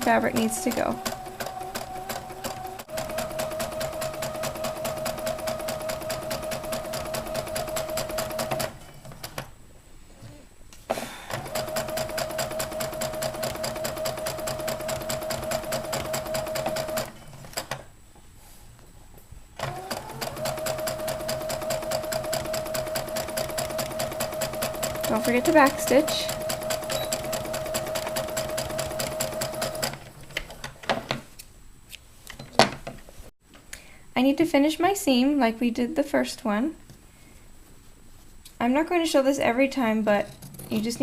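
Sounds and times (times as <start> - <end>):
sewing machine running: 0.0 - 9.5, 11.3 - 17.8, 19.6 - 30.1.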